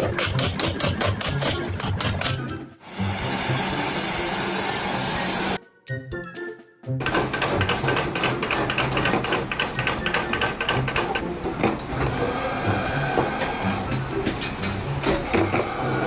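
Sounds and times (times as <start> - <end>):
machinery clattering rapidly: 0.0 - 5.6, 7.0 - 12.2.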